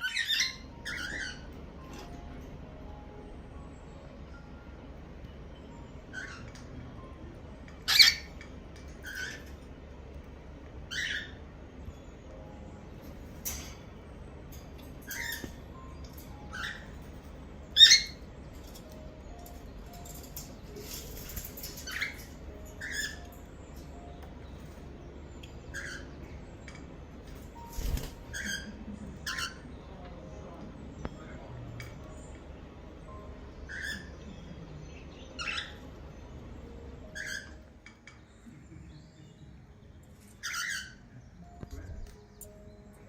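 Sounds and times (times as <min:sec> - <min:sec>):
loud cockatiel squawks: 0:40.4 - 0:41.0.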